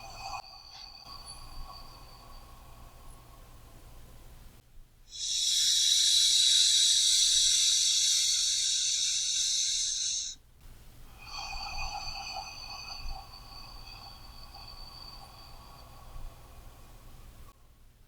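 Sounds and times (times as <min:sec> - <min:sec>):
person breathing deeply: 0:05.1 - 0:10.4, 0:11.2 - 0:17.4.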